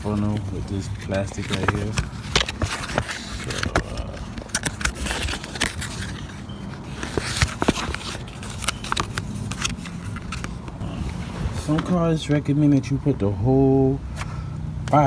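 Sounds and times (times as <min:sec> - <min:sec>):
plastic scraping: 0:00.0 - 0:12.0
plastic crackling and clicking: 0:00.2 - 0:10.8.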